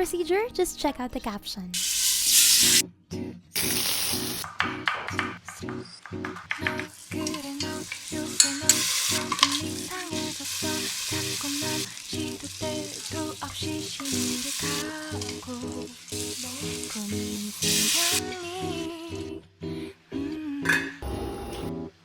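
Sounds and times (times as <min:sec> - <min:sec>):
food sizzling in a pan: 0:01.8 - 0:02.8, 0:03.6 - 0:04.4, 0:06.4 - 0:18.5
rhythmic background music: 0:03.6 - 0:19.4.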